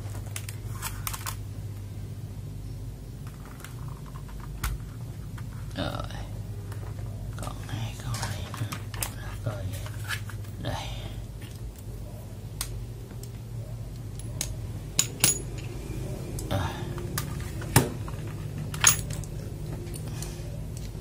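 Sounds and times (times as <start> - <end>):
keycaps clicking and clinking: 18.5 - 20.1.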